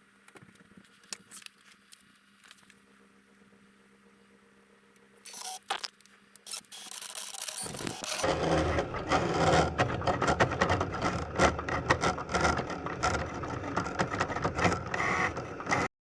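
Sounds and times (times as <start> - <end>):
small clicks: 5.0 - 8.3
rubbing and scraping: 6.5 - 15.8.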